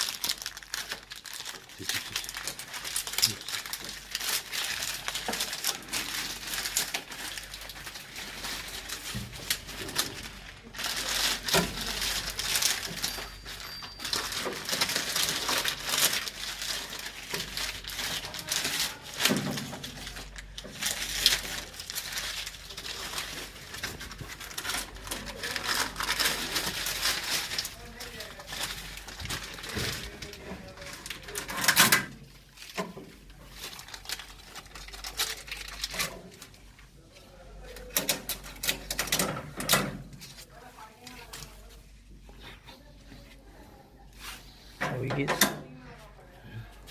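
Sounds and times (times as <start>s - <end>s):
rustling and crinkling: 0.0s - 46.9s.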